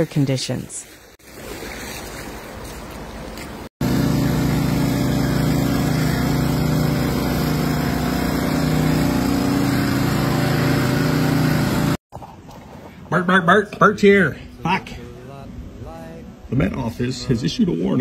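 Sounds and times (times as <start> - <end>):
engine running with low hum: 3.8 - 12.0.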